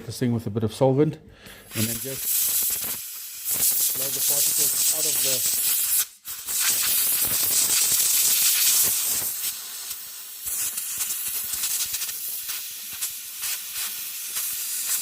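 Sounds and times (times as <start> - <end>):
compressed air hissing from blow gun: 1.6 - 15.0.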